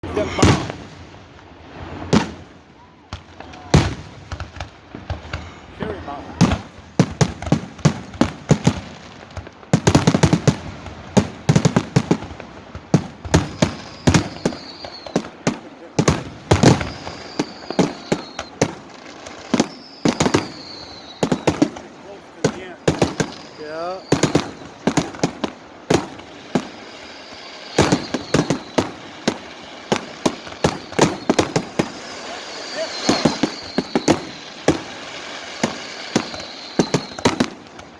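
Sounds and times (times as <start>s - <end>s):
firecrackers banging: 0.0s - 37.9s
faint high whistle: 13.6s - 15.4s, 16.7s - 18.6s, 19.6s - 21.6s, 23.4s - 24.8s, 26.8s - 29.0s, 30.6s - 37.5s.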